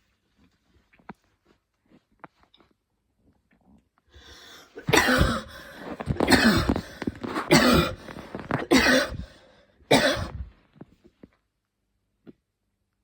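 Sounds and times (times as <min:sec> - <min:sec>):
woman coughing: 0:04.8 - 0:10.5.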